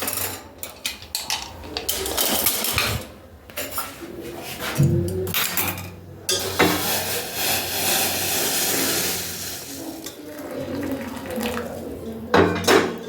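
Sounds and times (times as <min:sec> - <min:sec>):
liquid pouring through strainer: 0:06.5 - 0:12.0.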